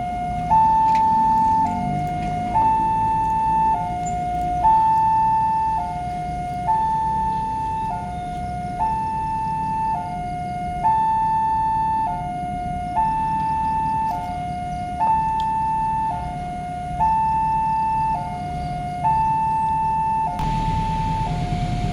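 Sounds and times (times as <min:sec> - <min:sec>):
level crossing two-tone alarm: 0:00.0 - 0:21.9
low rumble: 0:20.4 - 0:21.9.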